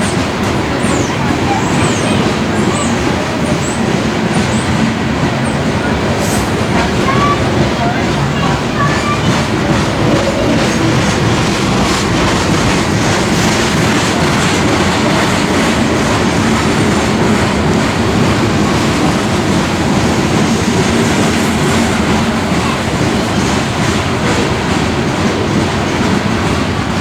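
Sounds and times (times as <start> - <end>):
clickety-clack over rail joints: 0.0 - 27.0
train wheels rumbling on rail: 0.0 - 27.0.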